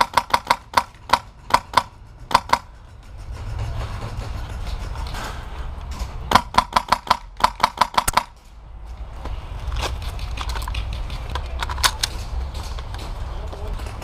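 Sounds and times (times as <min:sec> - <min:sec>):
airsoft rifle shots: 0:00.0 - 0:02.7, 0:06.3 - 0:08.4.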